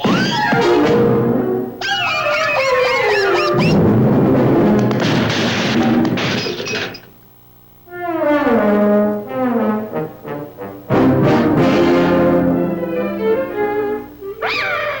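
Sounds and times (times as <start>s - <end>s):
cartoon orchestral music: 0.1s - 5.0s, 7.9s - 15.0s
orchestral hit: 0.6s - 1.8s, 3.5s - 6.5s, 10.9s - 13.6s
loud crashing clatter: 3.7s - 7.1s.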